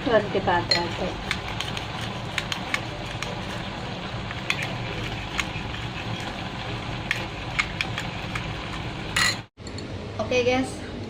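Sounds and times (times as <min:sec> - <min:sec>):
low background hum: 0:00.0 - 0:11.0
spoon stirring a drink: 0:00.7 - 0:03.7.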